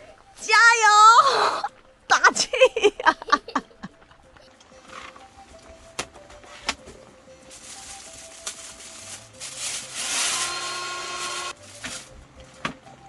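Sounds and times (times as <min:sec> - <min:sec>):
background music: 0:00.0 - 0:13.0
hissing whirring mechanical noise: 0:05.1 - 0:13.0.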